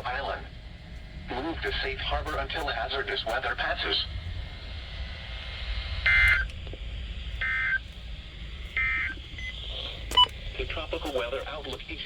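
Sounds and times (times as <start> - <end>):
low radio hum: 0.0 - 12.0.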